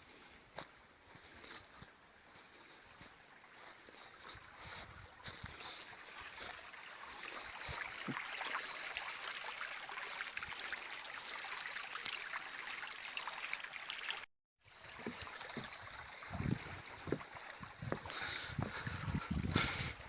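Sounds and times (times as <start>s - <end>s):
stream running over stones: 0.5s - 20.0s.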